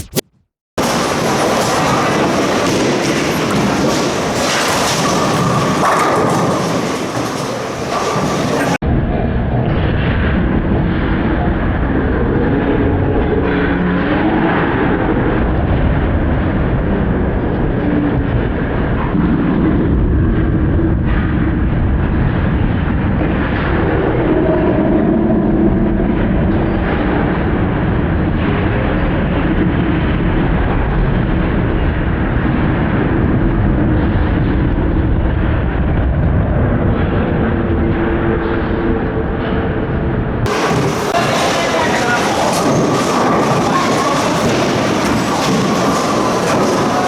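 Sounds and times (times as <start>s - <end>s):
bowling balls rolling: 0.8s - 8.8s, 40.4s - 47.0s
bowling pins crashing: 0.8s - 8.8s, 40.5s - 47.0s.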